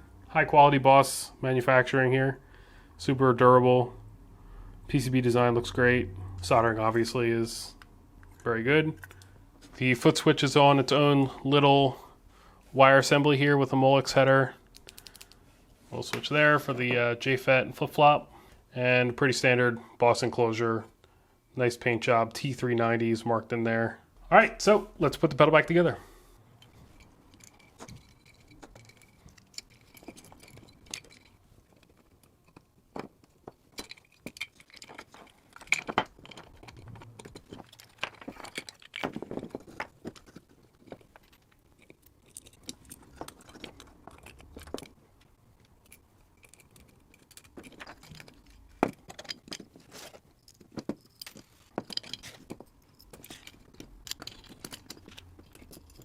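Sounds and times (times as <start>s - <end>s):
clicks and metallic clinks: 26.6s - 56.0s.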